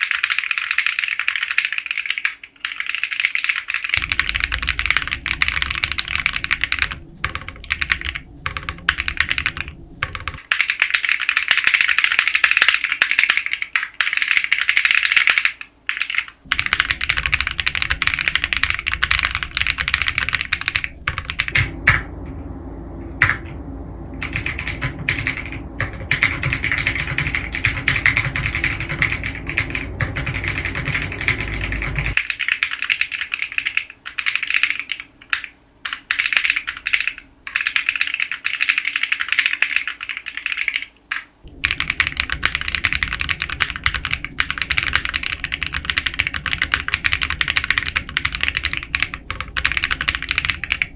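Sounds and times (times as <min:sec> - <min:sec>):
fast typing on mechanical keyboard: 0:00.0 - 0:21.8, 0:24.2 - 0:50.9.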